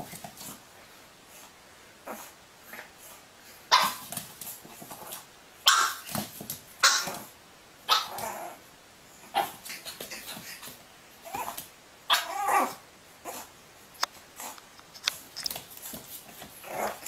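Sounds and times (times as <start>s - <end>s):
dog barking: 3.7s - 4.0s, 5.6s - 6.0s, 6.8s - 7.3s, 7.9s - 8.2s.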